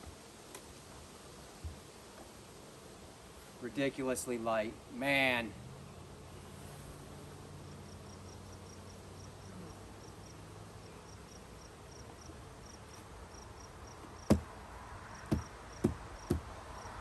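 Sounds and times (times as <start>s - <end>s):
honeybees humming: 0.0s - 17.0s
insects chirping: 5.7s - 17.0s
sharp knocks: 14.2s - 14.5s, 15.3s - 16.5s.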